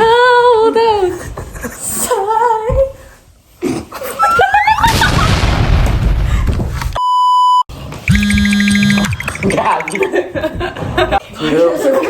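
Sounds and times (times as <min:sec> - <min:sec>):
electronic beep: 0:07.0 - 0:10.1.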